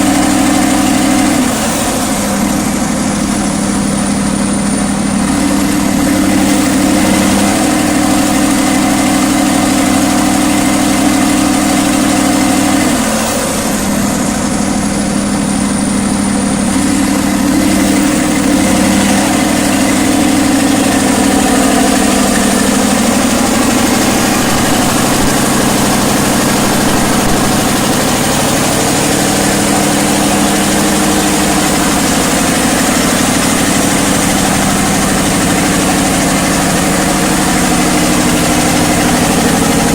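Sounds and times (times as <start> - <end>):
diesel generator engine drone: 0.0 - 39.9.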